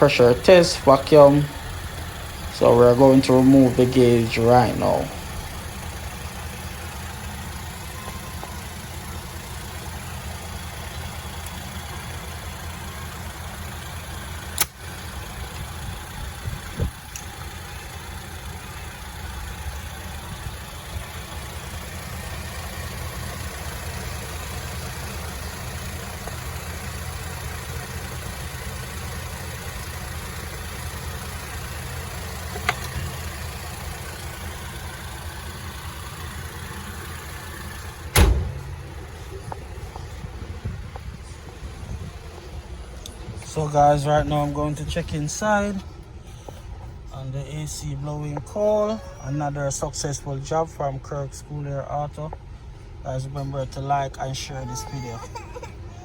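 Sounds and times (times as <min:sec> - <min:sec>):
ac compressor running: 0:00.0 - 0:50.2
car engine idling: 0:00.0 - 0:56.0
sharp clicks: 0:14.4 - 0:14.8.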